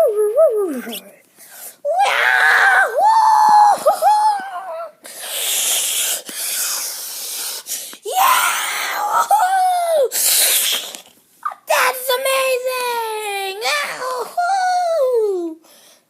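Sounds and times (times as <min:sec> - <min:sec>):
breathy hissing: 0:05.0 - 0:08.1, 0:10.0 - 0:11.1
child squealing: 0:08.1 - 0:10.6.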